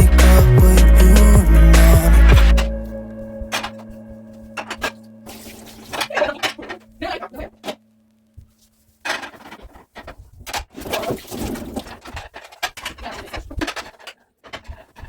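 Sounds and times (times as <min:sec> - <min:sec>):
low steady hum: 0:00.0 - 0:08.8
household items clattering: 0:04.6 - 0:07.8, 0:09.0 - 0:15.0.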